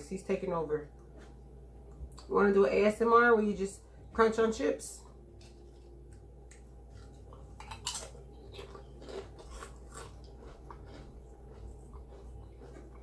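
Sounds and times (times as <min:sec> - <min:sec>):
chips being crunched: 0:07.6 - 0:11.1.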